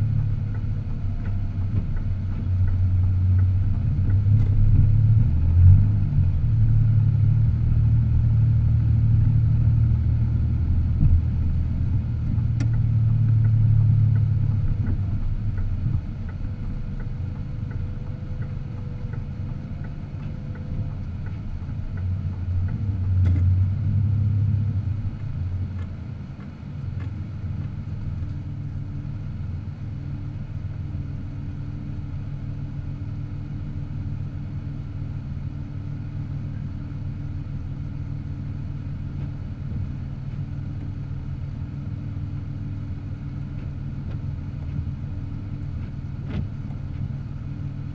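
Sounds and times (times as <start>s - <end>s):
car engine and road rumble: 0.0s - 47.9s.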